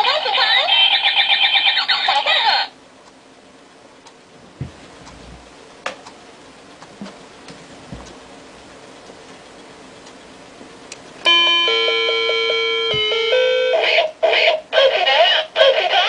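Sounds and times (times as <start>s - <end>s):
electronic beeping alarm melody: 11.3s - 14.1s.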